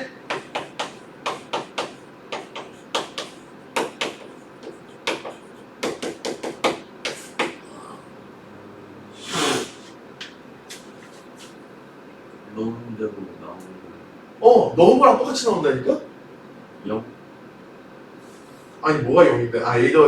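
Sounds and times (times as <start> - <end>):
sharp taps on hard surface: 0.3 - 7.6.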